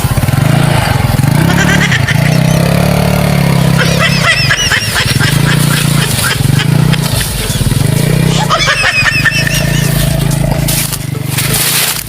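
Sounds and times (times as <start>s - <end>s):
small engine humming: 0.0s - 12.0s
high chirping notes: 1.4s - 3.1s.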